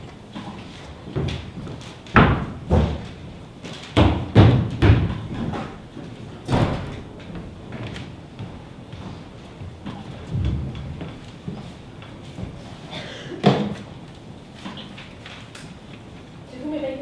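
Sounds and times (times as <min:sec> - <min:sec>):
heavy thumps and knocks: 0:01.1 - 0:03.3, 0:03.9 - 0:05.8.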